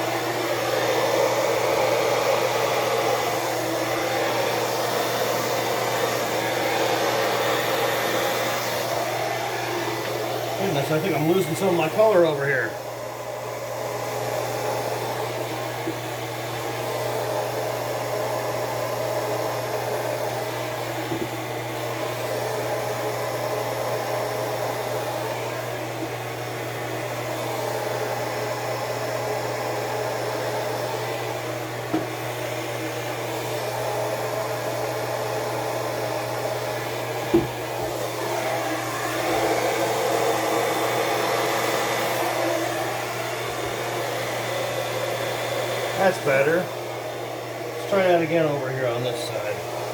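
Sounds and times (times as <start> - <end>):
hair dryer running: 0.0 - 49.9.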